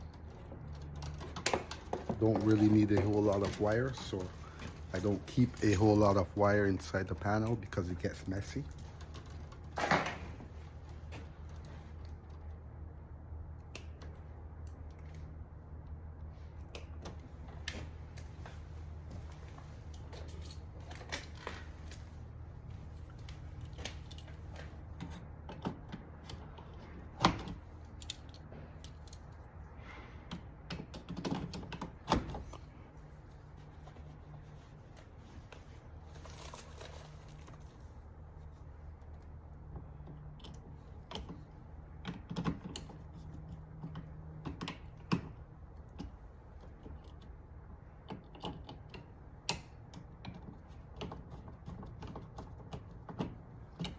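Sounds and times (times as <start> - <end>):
clicks and taps of tools on wires: 0.0 - 6.2, 13.5 - 29.6, 30.2 - 32.7, 38.9 - 53.9.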